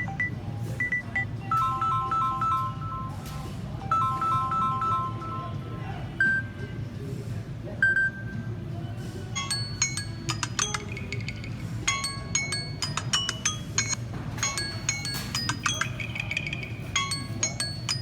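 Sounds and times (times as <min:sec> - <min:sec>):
bell-like ringtone melody: 0:03.9 - 0:05.6, 0:09.4 - 0:18.0.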